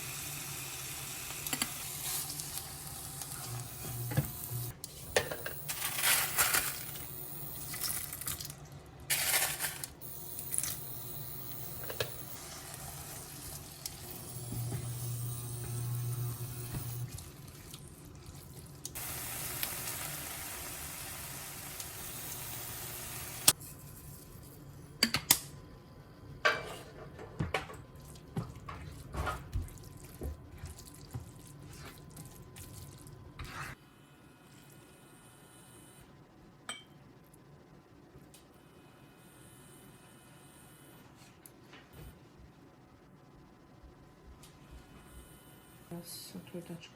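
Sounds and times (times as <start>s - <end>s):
water tap running: 18.9s - 23.5s.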